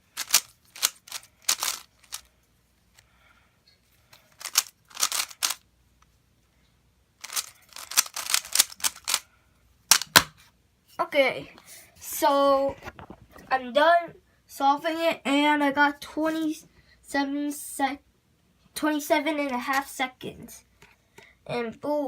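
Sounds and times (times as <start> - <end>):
puzzle cube plastic clicks: 0.0 - 2.3, 4.2 - 5.6, 7.2 - 9.2, 9.9 - 10.3.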